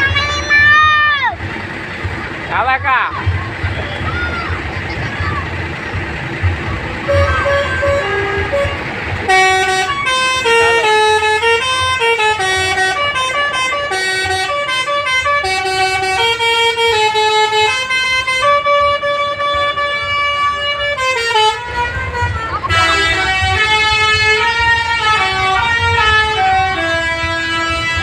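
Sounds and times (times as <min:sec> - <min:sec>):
bus engine running: 0:00.0 - 0:28.0
multi-tone bus horn melody: 0:06.3 - 0:28.0.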